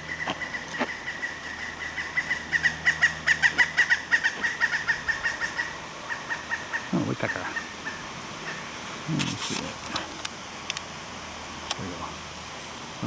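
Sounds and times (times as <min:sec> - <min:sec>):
woodpecker calling: 0:00.0 - 0:10.3
faint clicks: 0:09.2 - 0:10.9.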